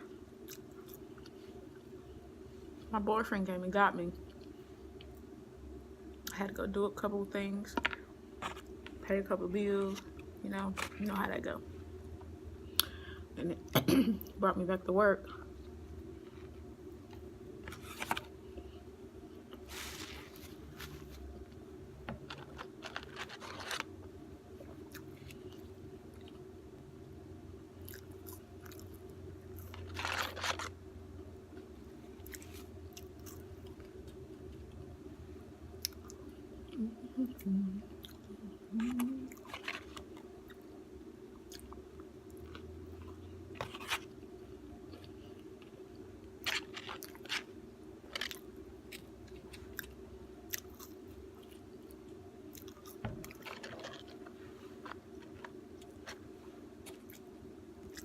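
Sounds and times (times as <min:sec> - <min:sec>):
steady low hum: 0:00.0 - 0:58.0
person chewing food: 0:38.0 - 0:40.7, 0:41.3 - 0:44.2, 0:44.8 - 0:47.5, 0:48.1 - 0:58.0.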